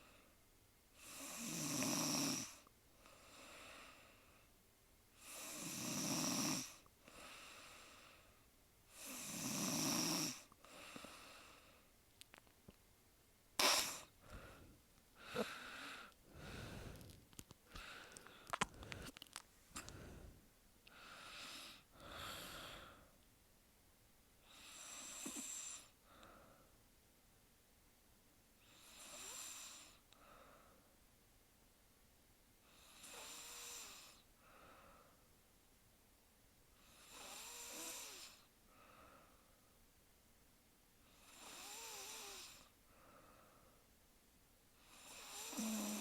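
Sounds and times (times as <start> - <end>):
woman snoring: 1.0 - 2.7, 5.2 - 6.8, 8.9 - 11.2, 24.5 - 25.9, 28.7 - 30.0, 32.8 - 34.2, 36.8 - 38.5, 41.1 - 42.7, 44.8 - 46.0
uneven breathing with small clicks: 10.4 - 12.8, 14.0 - 23.3, 25.2 - 26.8, 29.9 - 30.9.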